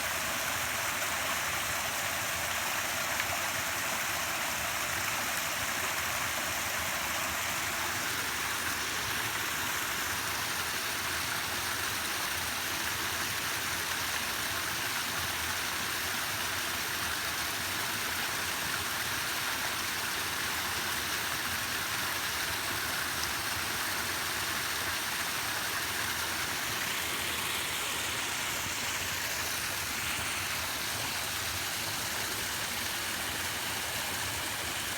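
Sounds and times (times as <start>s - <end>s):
falling water rushing: 0.0s - 12.8s, 22.8s - 34.9s.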